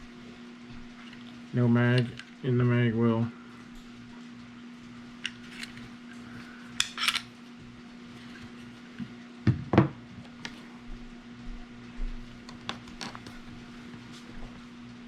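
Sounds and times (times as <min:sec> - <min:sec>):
pistol parts clicking and clinking: 0:06.8 - 0:07.3.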